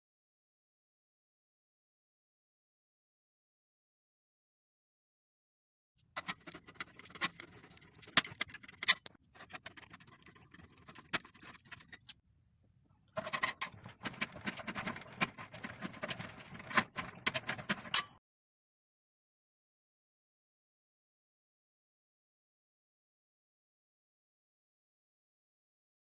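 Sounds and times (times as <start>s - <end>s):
metal parts and tools clattering: 6.2s - 9.9s, 13.2s - 18.2s.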